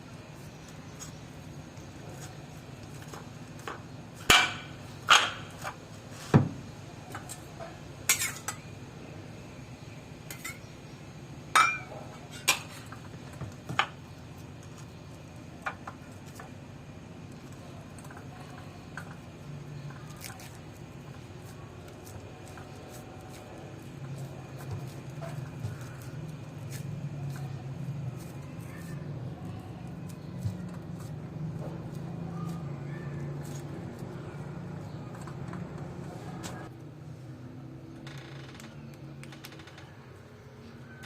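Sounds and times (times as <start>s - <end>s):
utensil clinking against dishes: 7.2s - 8.7s, 10.3s - 10.7s, 11.6s - 12.7s.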